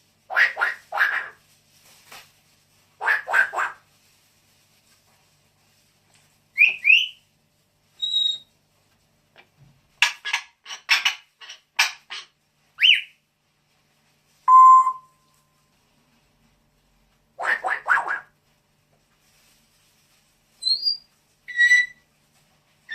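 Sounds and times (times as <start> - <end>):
harsh bird squawks: 0.3 - 1.4, 3.0 - 3.8, 17.4 - 18.3, 20.6 - 22.0
bird whistle: 6.6 - 7.2, 8.0 - 8.5, 12.8 - 13.1, 20.6 - 22.0
bird chirping: 8.0 - 8.5, 20.6 - 22.0
loud beep-like tone: 14.5 - 15.1.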